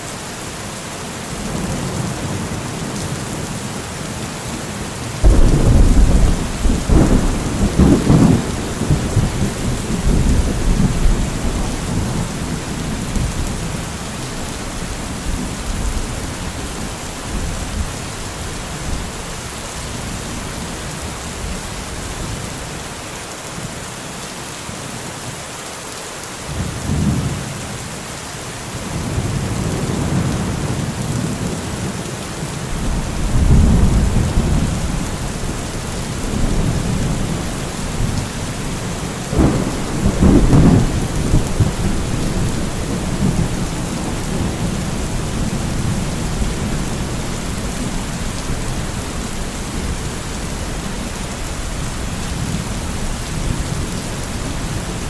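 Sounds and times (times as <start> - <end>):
steady rain falling: 0.0 - 55.0
low thunder rumbling: 5.2 - 19.1, 32.7 - 55.0.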